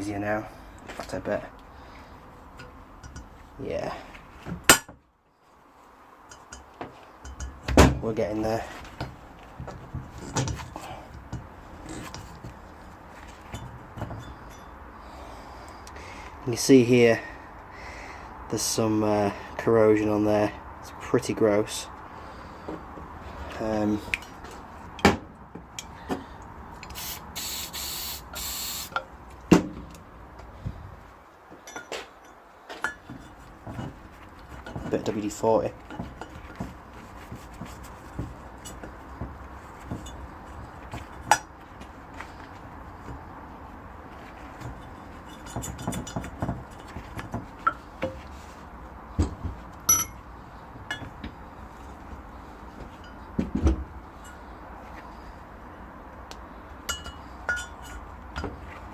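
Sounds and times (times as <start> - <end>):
aerosol can spraying: 26.9 - 28.9
metal parts clinking on workbench: 49.9 - 50.2.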